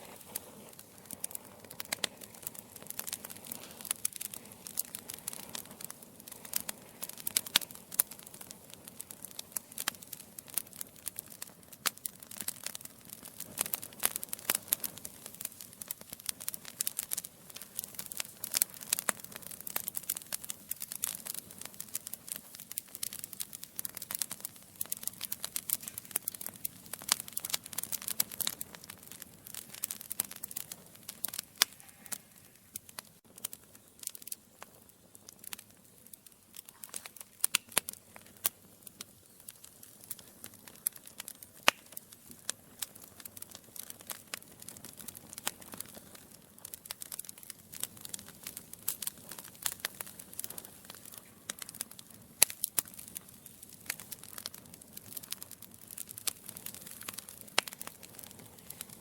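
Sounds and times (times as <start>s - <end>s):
wood fire crackling and popping: 0.0s - 59.0s.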